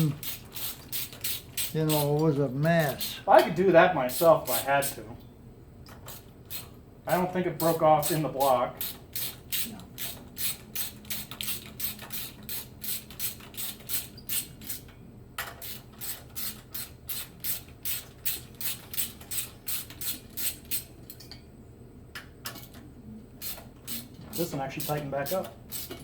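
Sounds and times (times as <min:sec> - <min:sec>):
ratchet wrench clicking: 0:00.0 - 0:03.2, 0:07.6 - 0:14.9, 0:15.6 - 0:21.2, 0:23.4 - 0:26.0.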